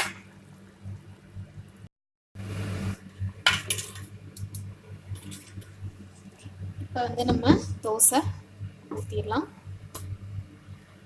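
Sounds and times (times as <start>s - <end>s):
metal utensils clinking: 3.5s - 4.6s, 5.2s - 5.7s.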